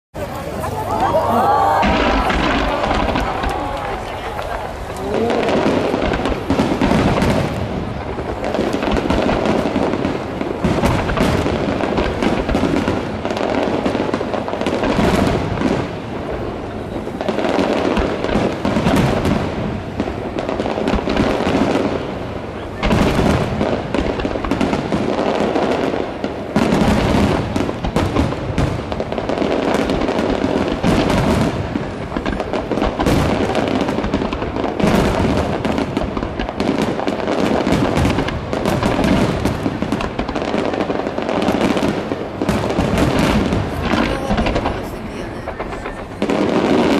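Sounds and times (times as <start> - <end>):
fireworks bursting and crackling: 0.1 - 46.9.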